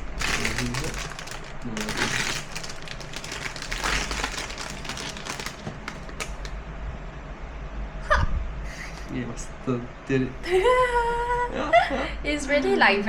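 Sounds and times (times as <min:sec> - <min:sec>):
plastic wrapper crinkling: 0:00.0 - 0:06.6.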